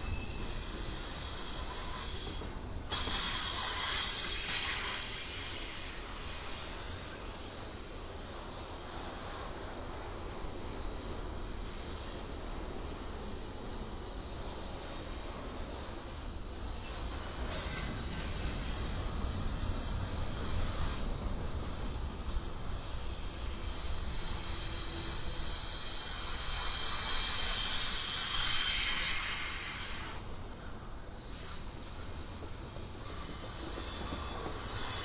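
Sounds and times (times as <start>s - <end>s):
freight train rumbling past: 0.0s - 35.0s
high-pitched wheel squeal: 16.8s - 30.1s.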